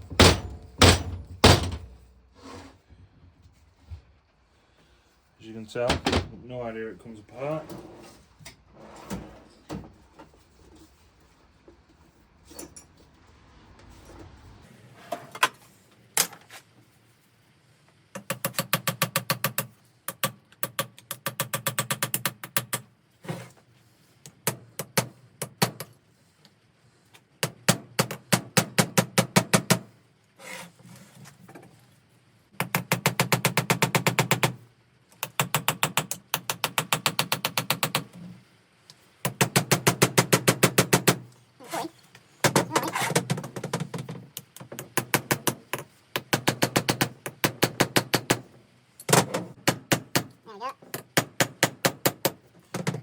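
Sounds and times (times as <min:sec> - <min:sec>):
impact gun hammering: 0:00.1 - 0:01.8.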